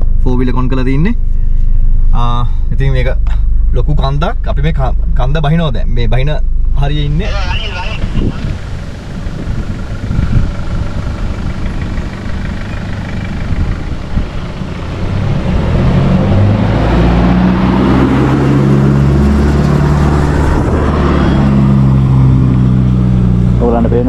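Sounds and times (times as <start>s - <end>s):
vehicle engine running: 0.0s - 24.0s
vehicle rumbling and knocking: 0.0s - 24.0s.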